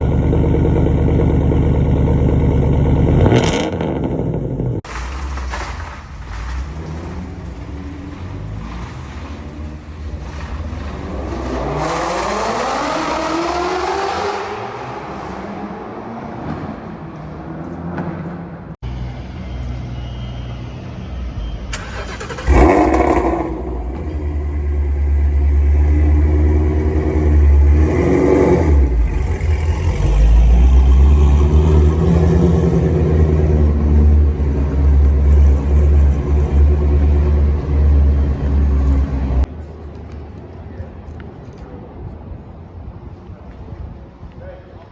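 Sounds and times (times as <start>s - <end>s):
engine revving hard: 3.0s - 4.8s, 21.8s - 34.2s.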